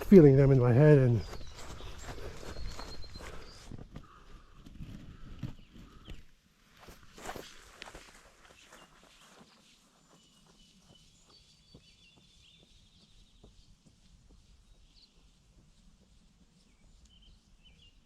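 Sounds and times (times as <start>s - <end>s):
bird chirps: 0.0s - 3.8s, 8.6s - 18.0s
faint birdsong: 0.0s - 18.0s.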